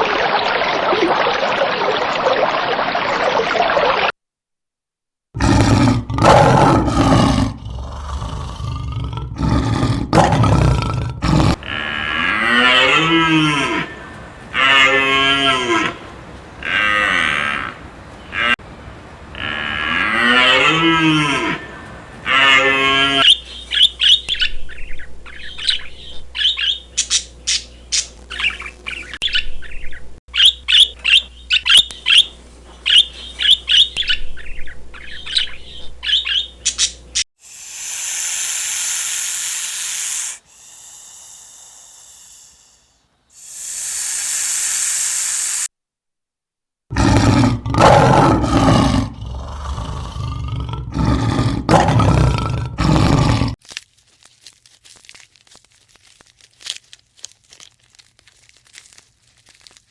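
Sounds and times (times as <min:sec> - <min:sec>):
big cat roaring: 0:05.4 - 0:18.6, 0:46.9 - 0:53.6
long hissing noises: 0:11.5 - 0:23.2, 0:37.4 - 0:45.7
small bird chirping: 0:37.4 - 0:45.7.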